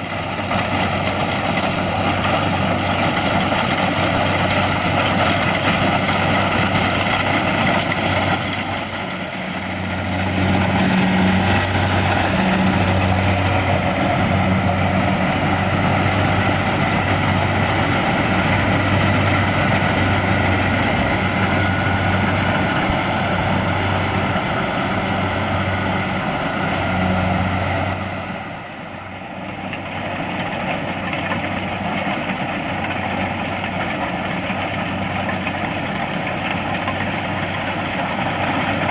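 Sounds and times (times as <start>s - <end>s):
combine harvester engine drone: 0.0s - 38.9s.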